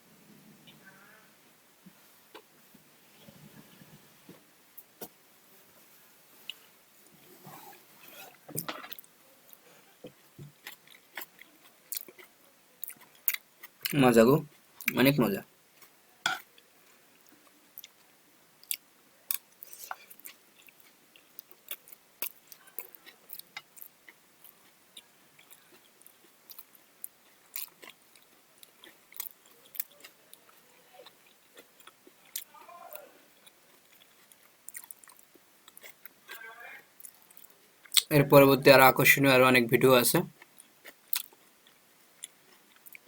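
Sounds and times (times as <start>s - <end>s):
person chewing and eating: 7.6s - 15.0s, 15.8s - 32.6s, 33.3s - 36.4s, 37.0s - 38.1s, 40.3s - 43.0s.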